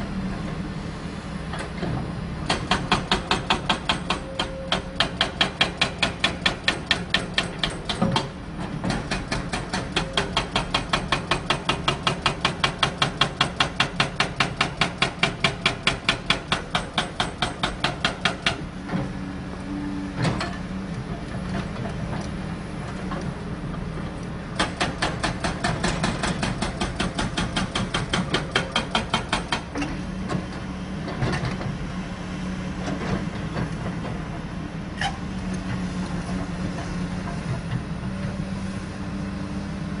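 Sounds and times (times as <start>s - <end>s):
hydraulic breaker hammer pounding: 2.4s - 18.6s, 24.6s - 29.9s.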